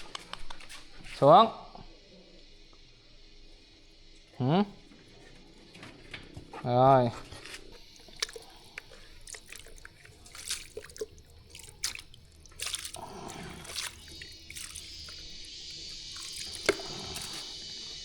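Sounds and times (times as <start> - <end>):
water dripping and splashing: 7.8 - 18.0
tap running into sink: 16.1 - 17.5.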